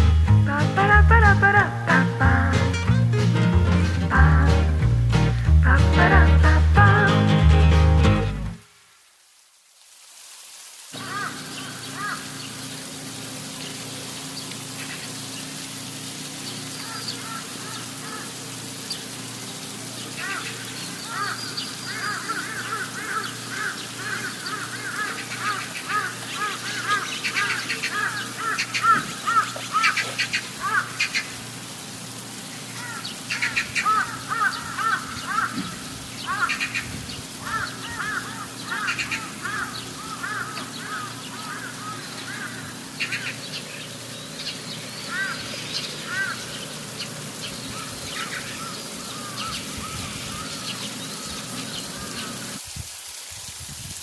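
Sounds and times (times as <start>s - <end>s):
faint steady hiss: 0.0s - 54.0s
birds chirping: 11.0s - 12.8s, 16.3s - 31.4s, 32.4s - 52.6s.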